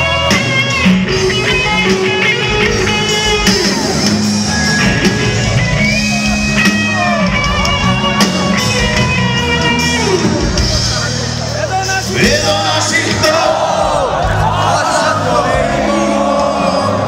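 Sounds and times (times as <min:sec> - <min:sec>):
guitar holding long melody notes: 0:00.0 - 0:12.9
live rock band playing: 0:00.0 - 0:17.0.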